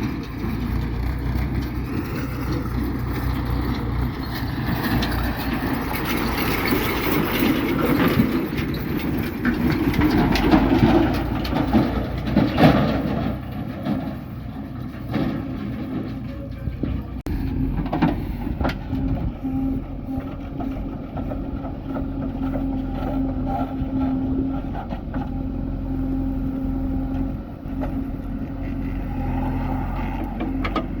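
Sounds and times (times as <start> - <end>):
metal clanks and rattles: 0.0 - 19.4, 30.1 - 31.0
diesel engines running: 0.0 - 31.0.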